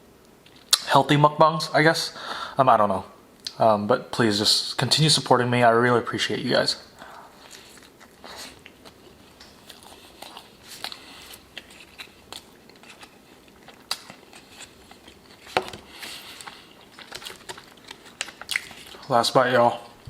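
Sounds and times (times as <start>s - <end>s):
person chewing food: 7.0s - 19.7s.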